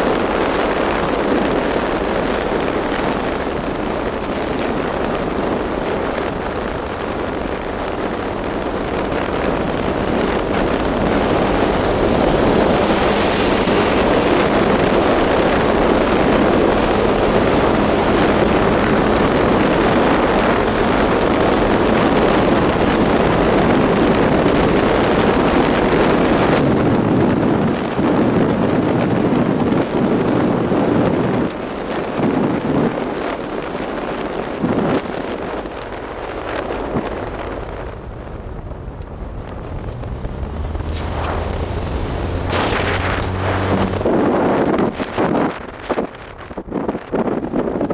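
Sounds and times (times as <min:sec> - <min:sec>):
wind rush on microphone: 0:00.0 - 0:47.9
road noise: 0:00.1 - 0:32.0, 0:36.8 - 0:47.1
vehicle engine running: 0:01.9 - 0:27.6, 0:38.1 - 0:46.6.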